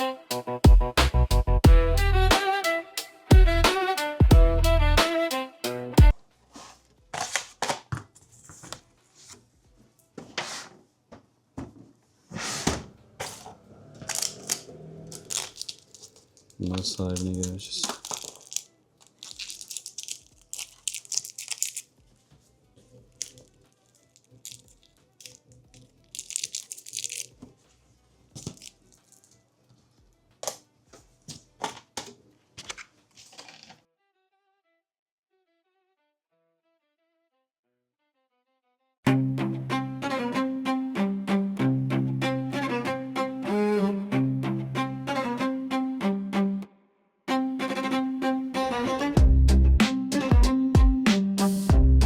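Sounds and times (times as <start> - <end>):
faint violin music: 0.0 - 0.7, 1.7 - 6.1, 39.1 - 46.7, 47.3 - 49.2
handling rustling: 13.2 - 33.8
small objects clicking and knocking: 14.0 - 21.9, 23.0 - 27.5, 28.4 - 29.4, 30.4 - 30.6, 31.3 - 33.8.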